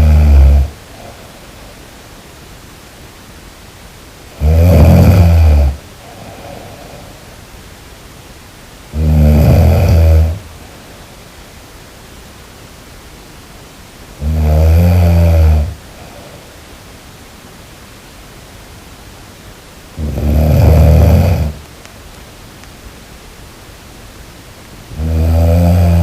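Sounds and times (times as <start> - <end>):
person snoring: 0.0 - 1.5, 4.3 - 7.3, 8.9 - 10.5, 14.2 - 16.5, 20.0 - 21.6, 24.9 - 26.0
steady hiss: 0.0 - 26.0.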